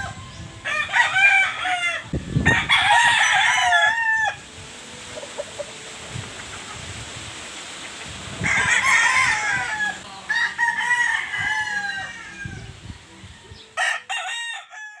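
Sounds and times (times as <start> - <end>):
rooster crowing: 0.0 - 4.4, 8.4 - 12.8, 13.4 - 15.0.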